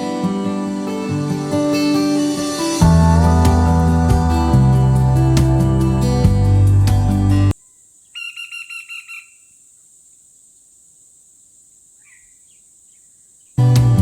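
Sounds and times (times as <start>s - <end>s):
background music: 0.0s - 7.6s, 13.6s - 14.0s
woodpecker call: 7.6s - 9.9s, 12.0s - 13.6s
faint hiss: 9.2s - 13.6s.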